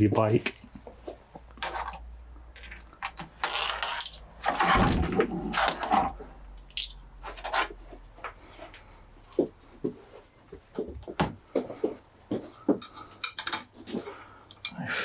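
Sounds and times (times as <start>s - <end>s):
small metal parts clinking: 2.6s - 4.2s, 6.6s - 7.0s, 12.8s - 13.7s.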